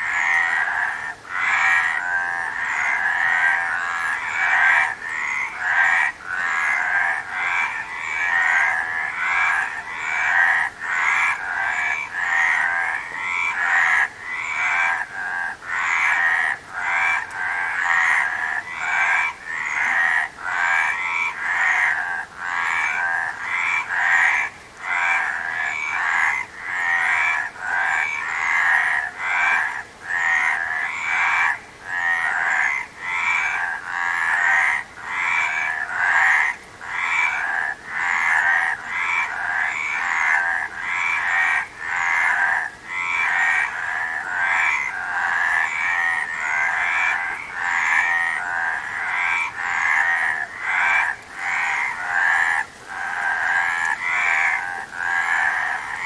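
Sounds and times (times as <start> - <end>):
frogs croaking in chorus: 0.0 - 56.0.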